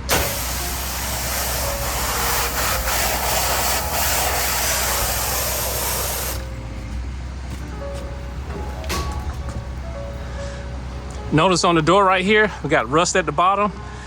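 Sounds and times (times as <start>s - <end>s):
pressure washer spray hissing: 0.0s - 6.6s.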